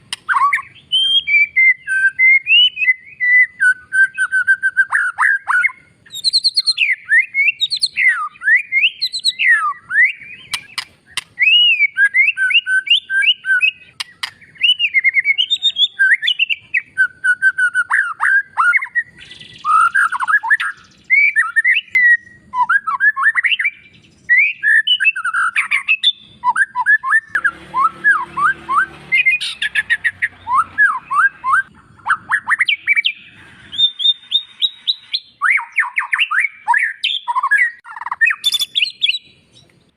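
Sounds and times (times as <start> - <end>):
bird singing whistled phrases: 0.1 - 39.7
harsh rattling bird notes: 5.0 - 15.8, 25.0 - 36.4.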